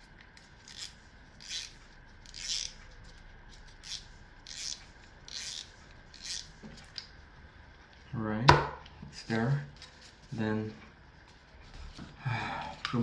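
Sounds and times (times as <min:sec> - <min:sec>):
rubbing and scraping of reel spool: 0:00.6 - 0:02.9, 0:03.6 - 0:06.8.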